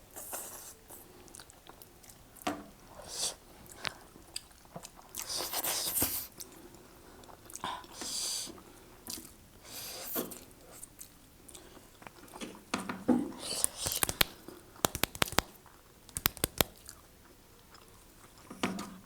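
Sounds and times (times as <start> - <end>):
soft mouth noises: 13.3 - 15.5, 16.1 - 17.0
crisp crunching clicks: 13.4 - 15.5, 16.1 - 16.9
chewing and biting food: 13.4 - 18.5.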